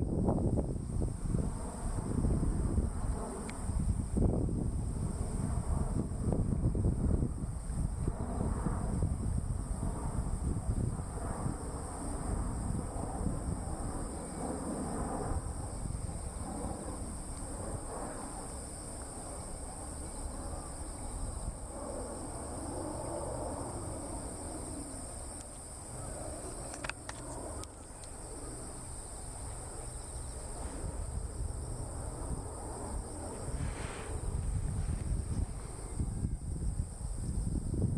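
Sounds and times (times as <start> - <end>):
insect chirring: 0.4 - 37.9
faint clicks: 26.4 - 28.2.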